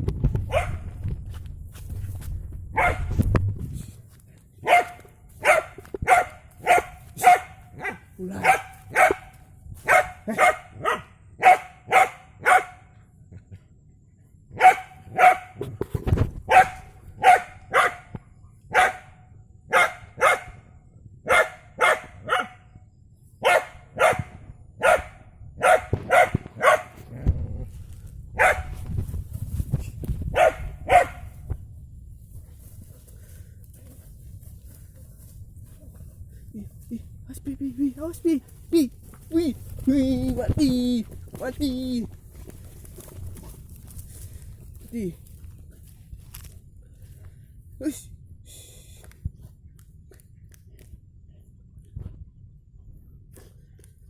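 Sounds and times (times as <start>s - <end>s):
dog barking: 0.5s - 0.8s, 2.8s - 3.2s, 4.6s - 12.9s, 14.5s - 15.7s, 16.5s - 18.1s, 18.7s - 20.6s, 21.2s - 22.7s, 23.4s - 27.0s, 28.4s - 28.8s, 30.3s - 31.4s.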